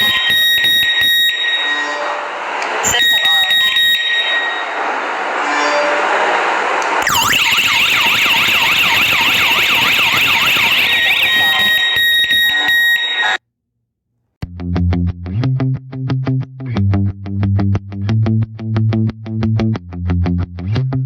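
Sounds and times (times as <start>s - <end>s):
alarm siren wailing: 0.0s - 6.0s, 7.0s - 13.4s
distorted electric guitar music: 14.4s - 21.0s.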